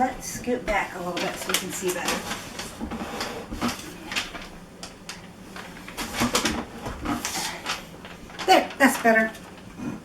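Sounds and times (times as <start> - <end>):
rubbing and scraping: 5.9 - 9.4.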